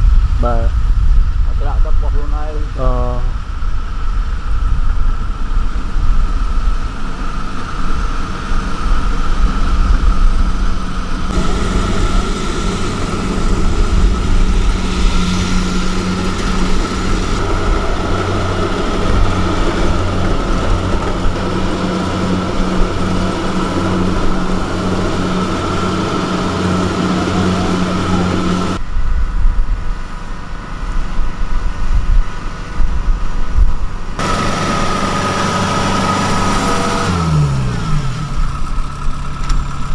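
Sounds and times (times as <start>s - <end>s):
high mechanical whine: 0.0s - 32.2s, 32.8s - 39.9s
farm machine diesel engine: 1.4s - 3.7s, 5.1s - 28.8s, 34.0s - 39.9s.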